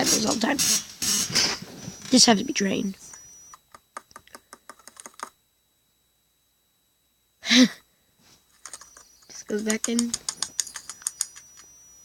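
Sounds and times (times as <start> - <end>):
sharp clicks: 3.1 - 5.3, 8.6 - 11.7.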